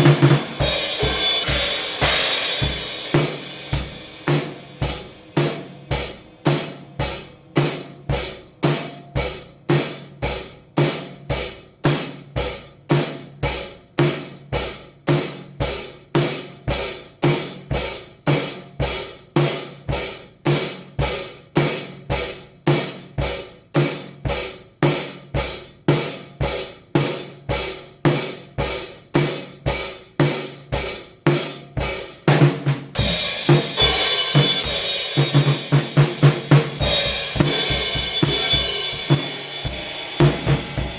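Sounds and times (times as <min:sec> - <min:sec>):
ringing cymbals: 0:00.0 - 0:07.8, 0:33.0 - 0:40.9
drum kit steady beat: 0:00.0 - 0:40.9.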